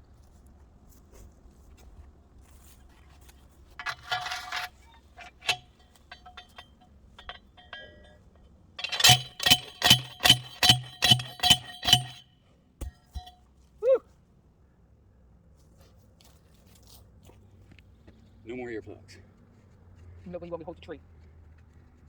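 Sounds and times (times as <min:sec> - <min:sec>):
post driver clanging on metal post: 0:03.8 - 0:08.2, 0:08.8 - 0:12.2, 0:12.8 - 0:13.4
metallic rattle: 0:03.8 - 0:13.4.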